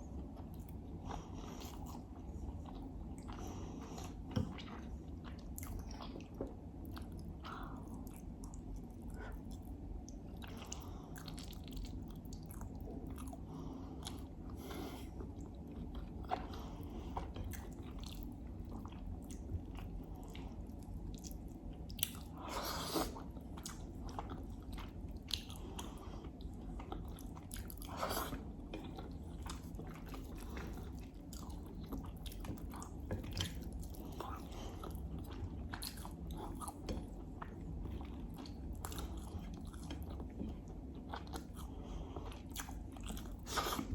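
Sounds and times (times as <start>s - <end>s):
close chewing and wet mouth clicks: 0.4s - 13.4s, 23.1s - 43.9s.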